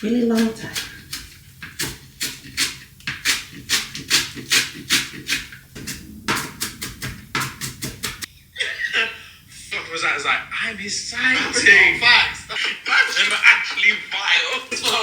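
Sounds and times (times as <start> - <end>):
knife chopping herbs on board: 0.0 - 5.4.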